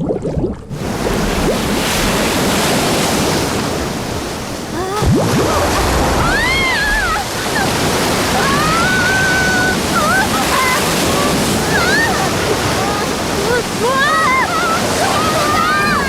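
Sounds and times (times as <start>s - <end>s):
cartoon rushing floodwater: 0.0s - 16.0s
high gliding squeals: 4.8s - 10.9s.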